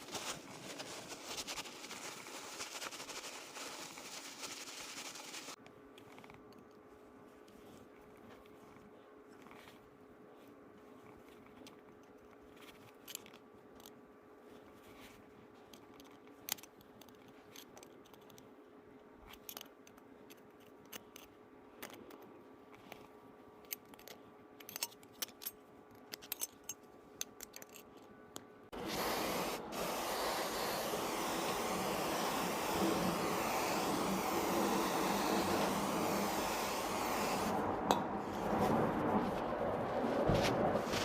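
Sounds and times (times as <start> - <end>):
metallic clicks of tools handled: 23.6 - 28.1.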